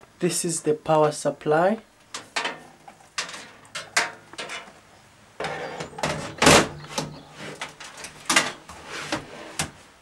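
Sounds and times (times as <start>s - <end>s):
knocks and scrapes in metal case: 5.4s - 9.7s.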